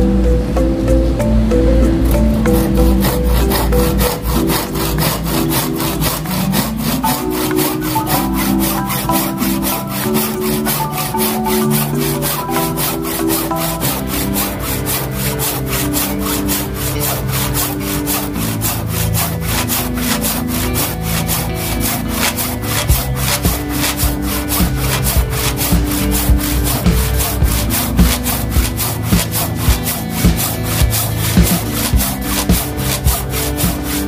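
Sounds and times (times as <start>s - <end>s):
background music: 0.0s - 34.0s
handsaw cutting wood: 2.1s - 34.0s.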